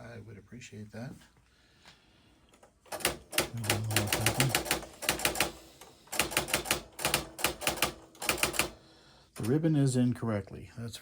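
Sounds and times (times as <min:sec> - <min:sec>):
electric typewriter typing: 0:02.9 - 0:08.8.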